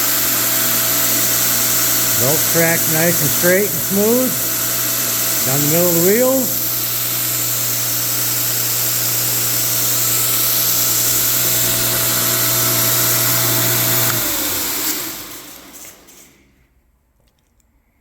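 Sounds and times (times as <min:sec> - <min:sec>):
abrasive belt hissing: 0:00.0 - 0:13.0
belt grinder motor humming: 0:00.0 - 0:16.4.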